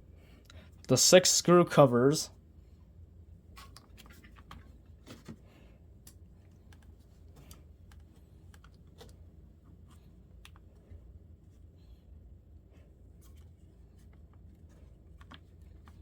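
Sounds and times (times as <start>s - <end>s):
low steady hum: 0.0s - 16.0s.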